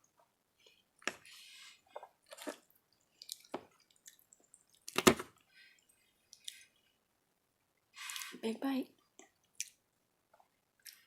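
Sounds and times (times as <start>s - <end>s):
person chewing food: 0.6s - 5.2s, 5.8s - 6.8s, 9.1s - 9.8s.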